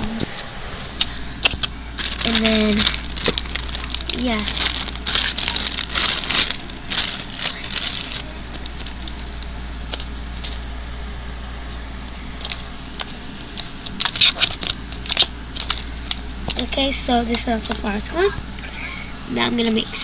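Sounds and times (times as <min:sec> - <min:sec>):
steady low hum: 0:00.0 - 0:20.0
slime crackling and squishing: 0:01.1 - 0:10.7, 0:12.3 - 0:18.1.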